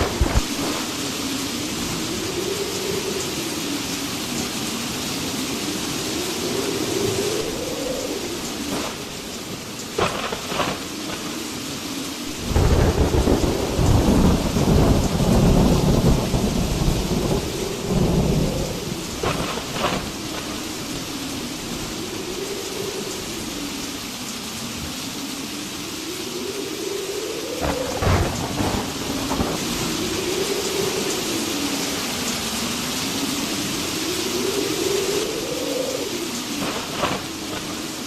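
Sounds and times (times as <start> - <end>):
rolling thunder: 0.0 - 3.1, 7.0 - 11.4, 12.2 - 23.6, 27.4 - 32.4, 34.2 - 38.0
heavy rain: 0.0 - 38.0
wind howling: 0.0 - 38.0
thunder cracks: 9.9 - 10.9, 12.3 - 20.6, 27.6 - 30.2, 36.6 - 37.9.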